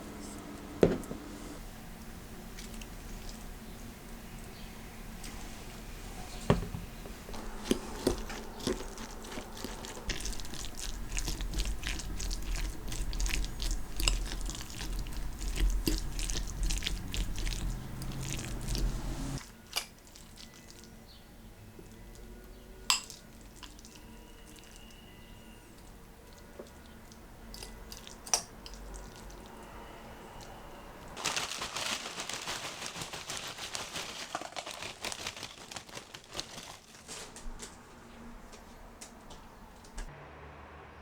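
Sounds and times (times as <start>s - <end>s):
utensil scraping a bowl: 7.3s - 19.4s.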